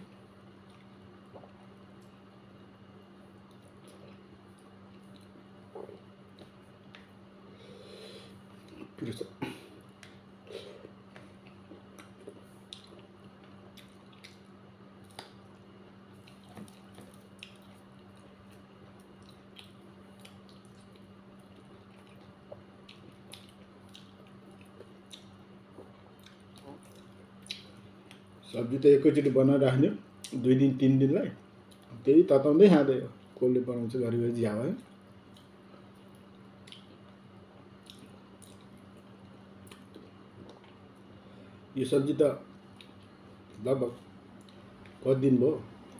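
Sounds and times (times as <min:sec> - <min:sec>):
steady low hum: 0:00.0 - 0:45.9
wet eating sounds: 0:03.2 - 0:07.1, 0:08.5 - 0:28.4, 0:31.4 - 0:32.1, 0:34.8 - 0:41.3, 0:42.4 - 0:45.0
person chewing food: 0:09.6 - 0:28.4, 0:31.6 - 0:32.0, 0:35.2 - 0:41.2, 0:42.6 - 0:43.6, 0:44.3 - 0:45.0.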